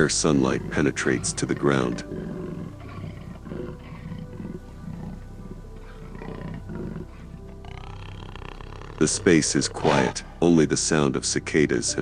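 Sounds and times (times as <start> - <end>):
background music with held tones: 0.0 - 12.0
low roar-like calls: 0.4 - 10.2.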